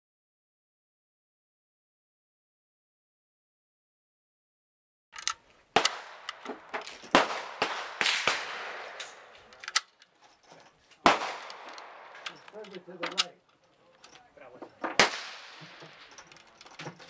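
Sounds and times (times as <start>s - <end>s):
pistol shots echoing: 5.7s - 9.6s, 11.0s - 12.4s, 14.9s - 16.1s.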